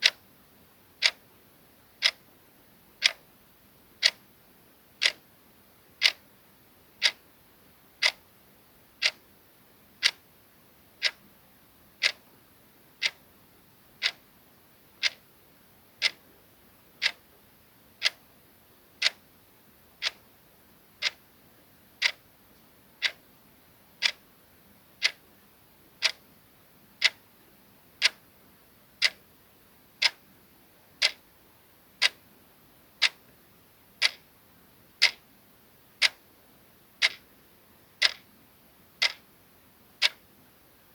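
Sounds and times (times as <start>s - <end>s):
clock ticking: 1.0s - 1.2s, 2.0s - 2.2s, 3.0s - 3.2s, 4.0s - 4.2s, 5.0s - 5.2s, 6.0s - 6.2s, 7.0s - 7.2s, 8.0s - 8.2s, 9.0s - 9.2s, 10.0s - 10.2s, 11.0s - 11.2s, 12.0s - 12.3s, 13.0s - 13.2s, 14.0s - 14.2s, 15.0s - 15.2s, 16.0s - 16.2s, 17.0s - 17.2s, 18.0s - 18.2s, 19.0s - 19.2s, 20.0s - 20.2s, 21.0s - 21.2s, 22.0s - 22.2s, 23.0s - 23.2s, 24.0s - 24.2s, 25.0s - 25.2s, 26.0s - 26.2s, 27.0s - 27.2s, 28.0s - 28.2s, 29.0s - 29.2s, 30.0s - 30.2s, 31.0s - 31.2s, 32.0s - 32.2s, 33.0s - 33.2s, 34.0s - 34.2s, 35.0s - 35.2s, 36.0s - 36.2s, 37.0s - 37.2s, 38.0s - 38.3s, 39.0s - 39.2s, 40.0s - 40.2s.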